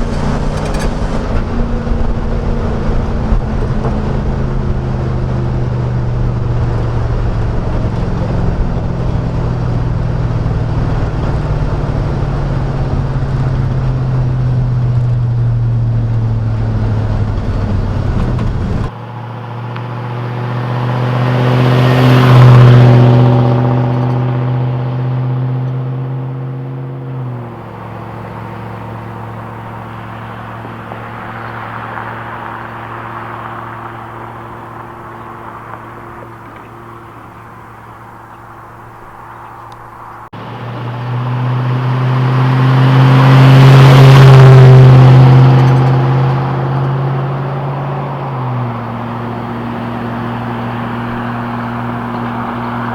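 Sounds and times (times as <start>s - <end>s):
engine droning inside cab: 0.0s - 19.0s, 21.9s - 52.9s
rush of noise: 0.0s - 22.9s.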